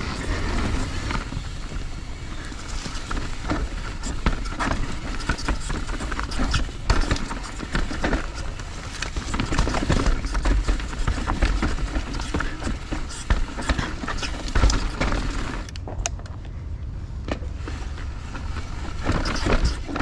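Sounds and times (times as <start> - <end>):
wind rumble: 14.0 - 20.0.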